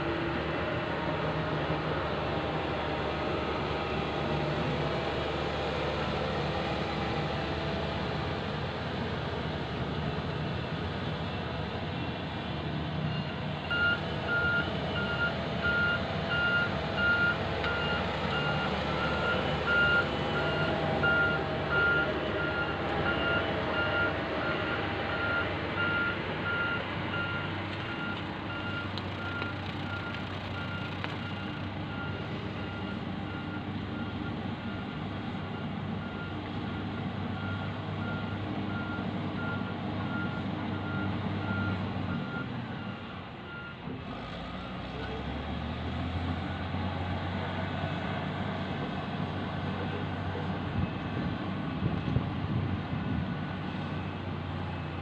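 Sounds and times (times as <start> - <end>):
heavy machine diesel engine running: 0.0 - 55.0
reversing alarm beeping: 13.1 - 34.9.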